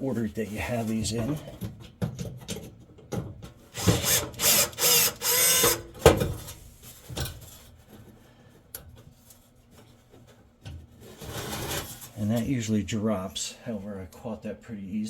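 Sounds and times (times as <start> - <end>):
cordless screwdriver running: 3.8 - 5.8.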